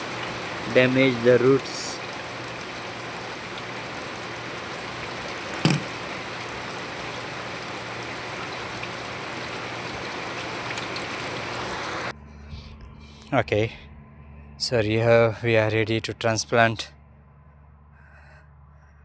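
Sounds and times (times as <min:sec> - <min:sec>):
water rushing: 0:00.0 - 0:12.1
sharp knock: 0:05.6 - 0:06.0.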